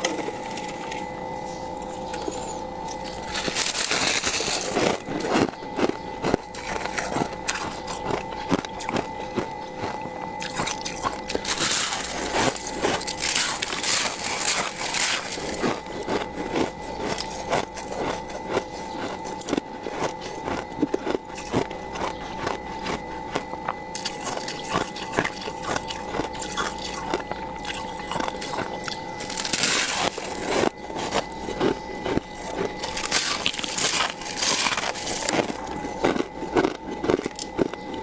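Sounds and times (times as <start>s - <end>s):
steady hum: 0.0s - 38.0s
freezer frost being scraped: 3.2s - 5.0s, 11.3s - 16.0s, 29.2s - 31.6s, 32.4s - 35.7s.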